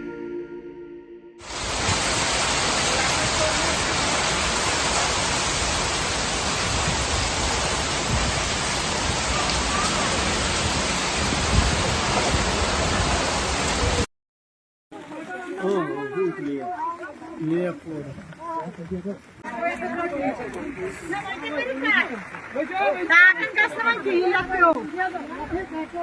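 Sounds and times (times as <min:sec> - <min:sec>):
rain: 0:01.4 - 0:14.1, 0:14.9 - 0:26.0
wind buffeting microphone: 0:01.5 - 0:14.0, 0:17.6 - 0:26.0
storm wind: 0:01.5 - 0:14.1.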